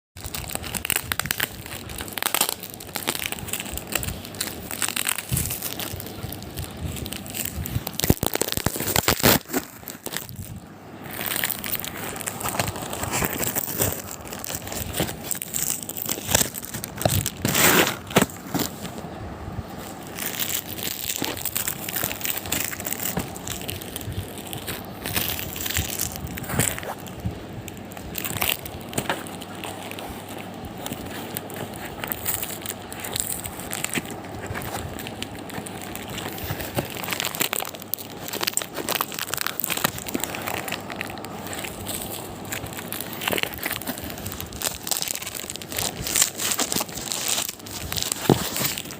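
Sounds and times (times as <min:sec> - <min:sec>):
plastic and paper crinkling: 0:00.2 - 0:48.9.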